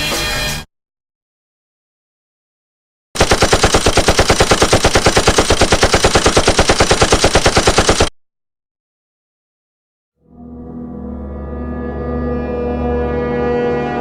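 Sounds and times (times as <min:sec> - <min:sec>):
machine-gun fire: 0:03.2 - 0:08.1.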